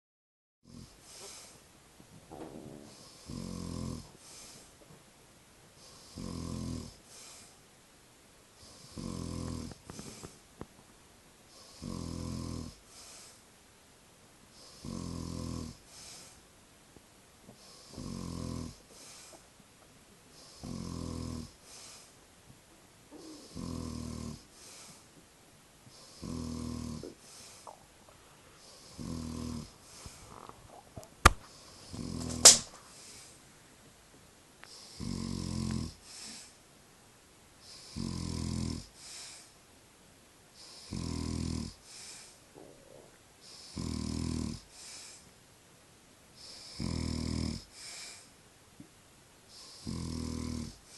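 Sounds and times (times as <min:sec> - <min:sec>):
man snoring: 0:00.6 - 0:01.0, 0:02.8 - 0:04.5, 0:05.8 - 0:07.4, 0:08.6 - 0:10.3, 0:11.6 - 0:12.8, 0:14.6 - 0:16.3, 0:17.7 - 0:19.2, 0:20.4 - 0:22.1, 0:23.1 - 0:25.0, 0:25.9 - 0:27.7, 0:28.6 - 0:30.5, 0:31.8 - 0:32.6, 0:34.7 - 0:36.5, 0:37.7 - 0:39.4, 0:40.6 - 0:42.3, 0:43.4 - 0:45.2, 0:46.4 - 0:48.3, 0:49.5 - 0:50.8
sharp clicks: 0:32.2 - 0:32.7.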